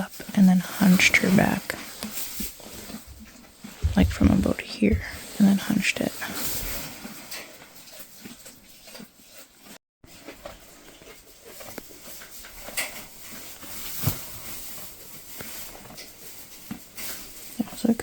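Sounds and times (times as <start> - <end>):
soft rustling: 0.9 - 6.9.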